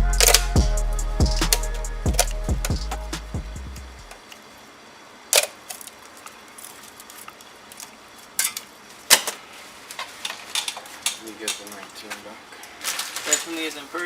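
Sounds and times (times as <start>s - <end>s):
background music: 0.0s - 4.1s.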